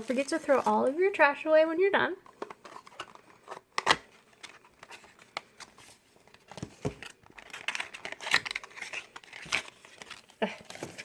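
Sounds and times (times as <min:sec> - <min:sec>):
plastic bag crinkling and tearing: 0:00.0 - 0:01.0, 0:07.0 - 0:11.0.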